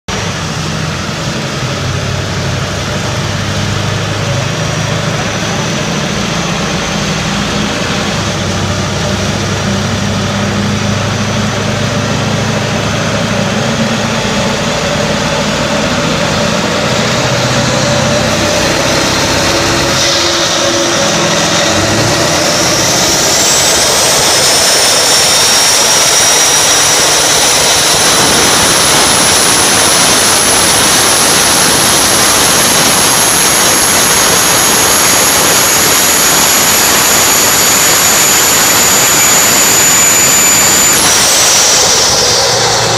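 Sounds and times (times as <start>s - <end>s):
diesel engine roaring under load: 0.1s - 42.9s
high turbo whistle: 3.4s - 42.9s.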